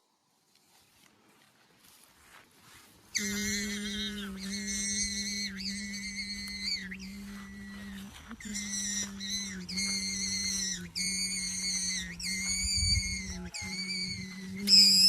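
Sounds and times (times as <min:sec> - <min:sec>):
steady low hum: 0:02.9 - 0:15.0
high whistling tones: 0:03.1 - 0:15.0.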